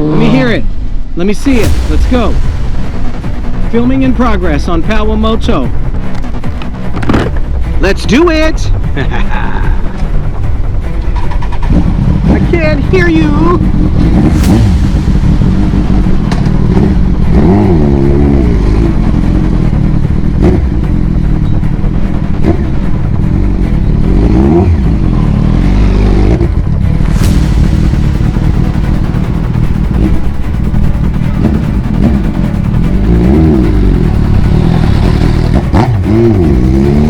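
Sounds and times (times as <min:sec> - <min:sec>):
motorcycle engine revving: 0:01.6 - 0:37.0.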